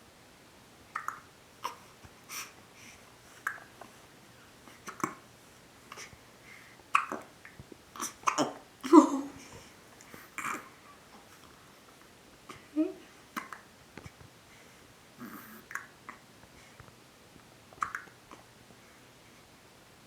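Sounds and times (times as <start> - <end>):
baby hiccupping: 1.0 - 1.9, 6.9 - 7.3, 8.0 - 9.3, 17.8 - 18.2.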